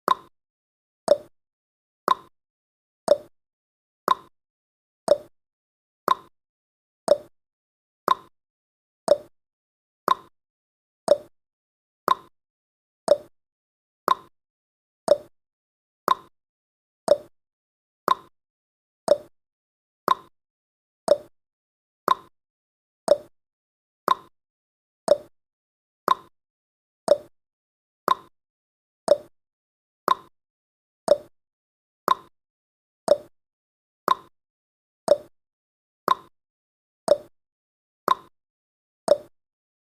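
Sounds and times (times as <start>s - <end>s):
timer ticking: 1.1s - 1.3s, 3.1s - 3.3s, 5.1s - 5.3s, 7.1s - 7.3s, 9.1s - 9.3s, 11.1s - 11.3s, 13.1s - 13.3s, 15.1s - 15.3s, 17.1s - 17.3s, 19.1s - 19.3s, 21.1s - 21.3s, 23.1s - 23.3s, 25.1s - 25.3s, 27.1s - 27.3s, 29.1s - 29.3s, 31.1s - 31.3s, 33.1s - 33.3s, 35.1s - 35.3s, 37.1s - 37.3s.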